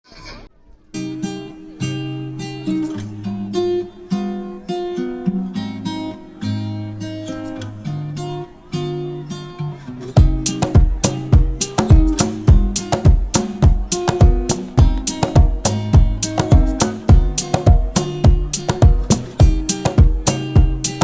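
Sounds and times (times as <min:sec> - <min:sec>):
acoustic guitar plucked melody: 0:00.8 - 0:21.0
loud drum hits: 0:10.2 - 0:20.8.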